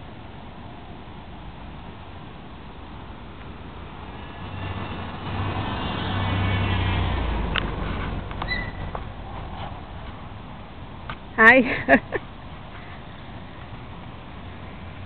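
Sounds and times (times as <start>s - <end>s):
car passing by: 3.6s - 10.4s.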